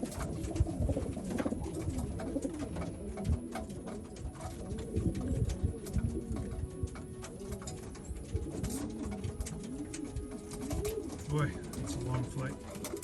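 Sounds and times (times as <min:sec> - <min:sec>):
birds moving clicks and knocks: 0:00.0 - 0:13.0
pigeons cooing: 0:00.0 - 0:13.0.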